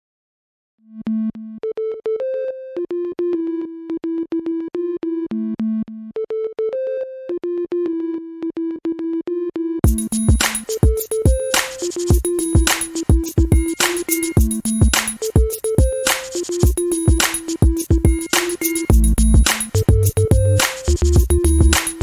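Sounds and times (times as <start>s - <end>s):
synthesizer melody: 5.7s - 22.0s
drums: 9.8s - 22.0s.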